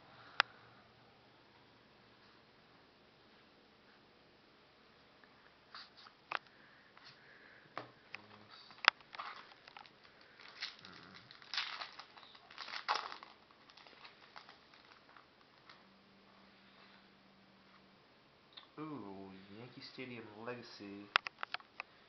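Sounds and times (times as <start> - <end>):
cards clicking and rustling: 8.7 - 15.2
wrapper crinkling: 8.8 - 15.8.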